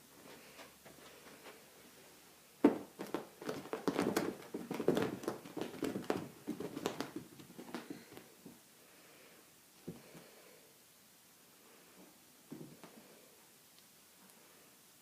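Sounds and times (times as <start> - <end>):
cat paws scrabbling on floor: 2.6 - 8.6.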